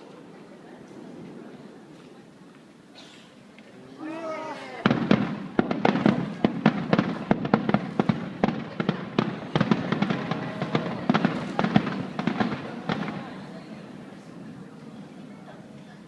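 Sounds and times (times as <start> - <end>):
fireworks bangs and crackles: 4.8 - 15.3.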